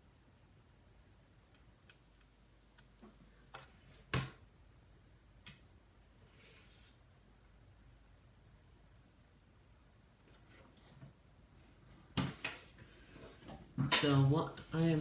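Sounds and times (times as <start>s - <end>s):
soft hiss: 5.2s - 15.0s.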